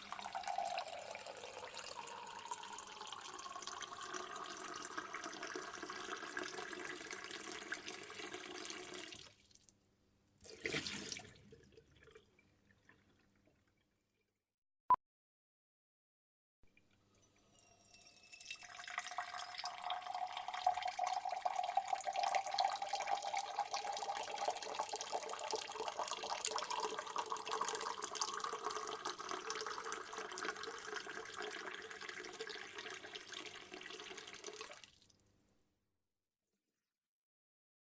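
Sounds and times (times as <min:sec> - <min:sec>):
water filling a cup: 0:00.0 - 0:09.6, 0:10.5 - 0:13.6, 0:17.1 - 0:35.2.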